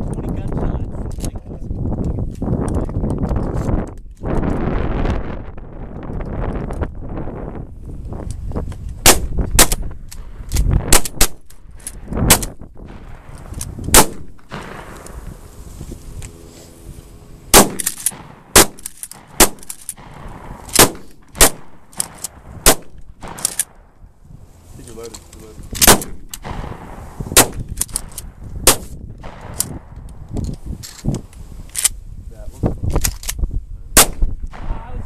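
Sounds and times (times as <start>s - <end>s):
shotgun shots: 9.0s - 11.6s, 12.2s - 15.4s, 17.5s - 23.8s, 25.8s - 29.9s, 34.0s - 35.0s.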